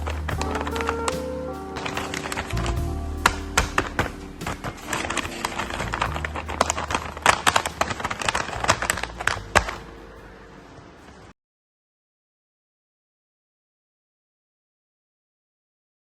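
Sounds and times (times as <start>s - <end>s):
objects being handled tapping: 0.0s - 9.9s.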